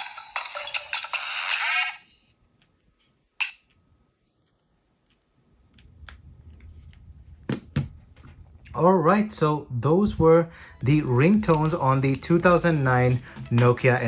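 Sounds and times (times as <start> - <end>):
phone ringtone: 0.0 - 2.2.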